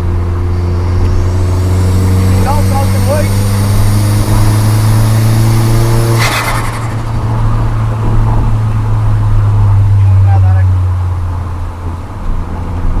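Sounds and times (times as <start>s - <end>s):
car engine running under throttle: 0.0s - 13.0s
turbo flutter: 0.8s - 7.8s.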